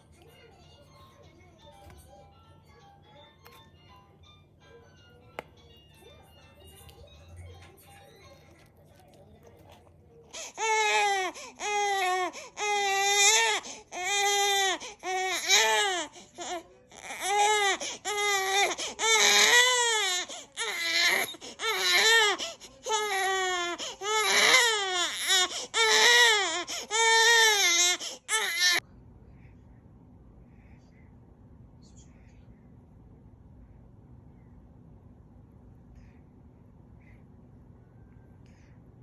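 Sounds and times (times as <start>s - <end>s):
baby crying: 10.4s - 28.8s.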